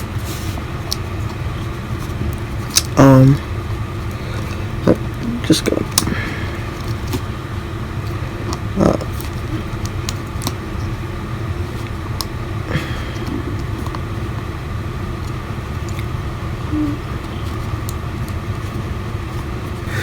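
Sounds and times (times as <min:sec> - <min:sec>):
low background rumble: 0:00.0 - 0:20.0.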